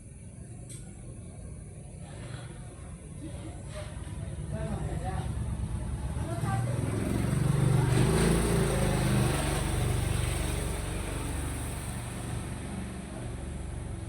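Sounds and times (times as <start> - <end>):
motor vehicle passing: 5.1 - 14.0.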